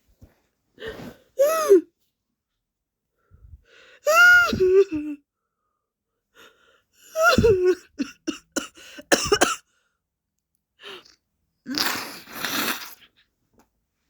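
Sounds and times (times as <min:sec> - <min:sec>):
woman crying and sobbing: 0:07.1 - 0:09.5.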